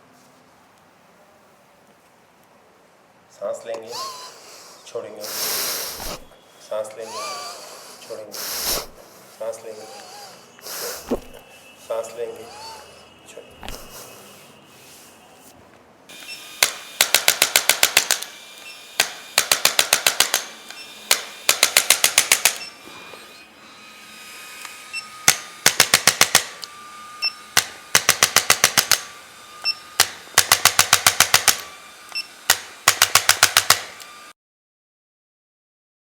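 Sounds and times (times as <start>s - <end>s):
rapid mechanical clicks: 16.6s - 18.3s, 19.0s - 20.5s, 21.1s - 22.6s, 27.6s - 29.0s, 30.0s - 31.7s, 32.5s - 34.0s.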